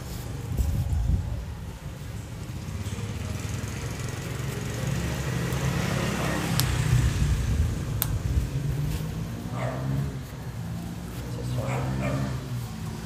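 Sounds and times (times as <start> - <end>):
low engine rumble: 0.0 - 13.0
sharp clicks: 8.0 - 8.2.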